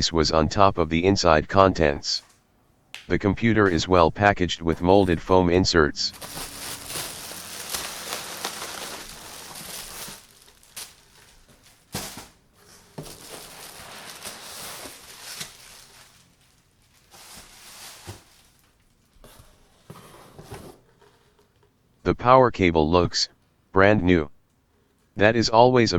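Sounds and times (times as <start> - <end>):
foam and plastic rustling: 6.0 - 21.4.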